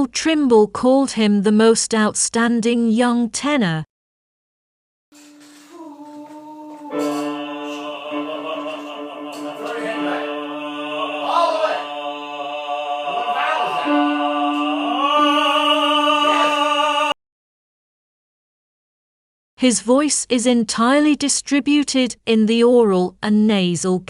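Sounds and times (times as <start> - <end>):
operatic tenor singing: 5.7 - 17.2.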